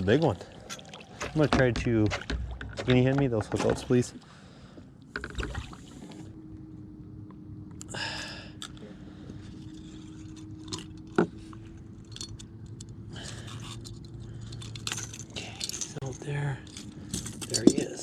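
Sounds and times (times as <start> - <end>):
faint steady hum: 0.0 - 18.0
pliers and hooks jangling: 12.0 - 18.0.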